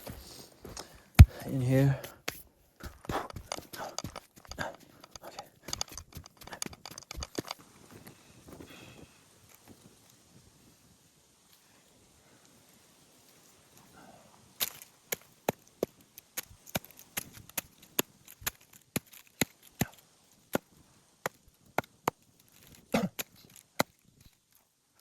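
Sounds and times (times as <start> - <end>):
firewood cracking: 2.8 - 9.8, 14.6 - 25.0.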